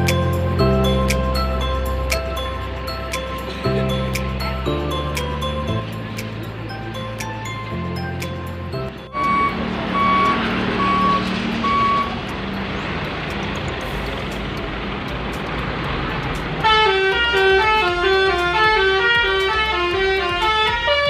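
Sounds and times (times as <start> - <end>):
bus engine running: 0.0 - 21.0
traffic noise: 0.0 - 21.0
reversing beeper: 9.1 - 12.2
musical horn playing tune: 16.6 - 21.0.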